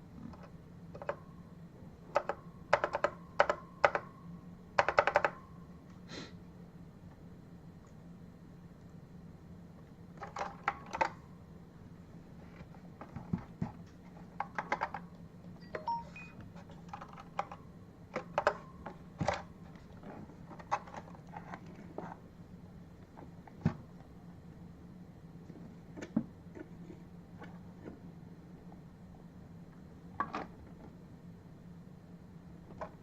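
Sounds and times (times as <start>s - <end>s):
low steady hum: 0.0s - 33.0s
keyboard keystrokes clacking: 2.1s - 4.1s, 4.8s - 5.4s.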